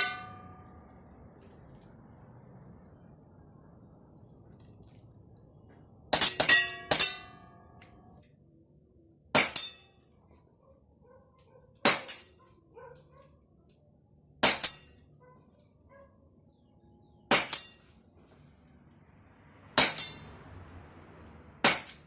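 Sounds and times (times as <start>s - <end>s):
metallic ringing: 0.0s - 1.2s, 6.1s - 8.2s, 9.4s - 10.0s, 11.9s - 12.4s, 14.4s - 15.1s, 17.3s - 18.0s, 19.8s - 20.4s, 21.6s - 22.0s
air pistol shots: 19.8s - 20.3s, 21.6s - 22.0s.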